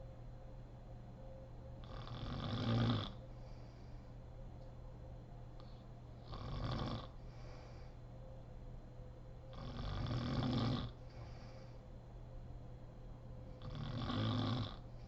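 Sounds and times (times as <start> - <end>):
quiet breathing: 1.7 - 4.6, 5.5 - 12.5, 13.3 - 15.0
woman snoring: 1.8 - 3.2, 6.2 - 7.2, 9.5 - 11.0, 13.6 - 14.8.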